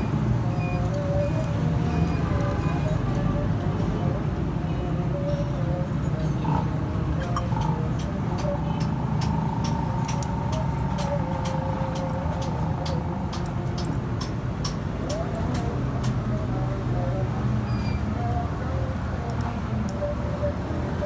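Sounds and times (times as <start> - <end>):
sharp ticks: 6.2 - 16.6, 17.9 - 21.0.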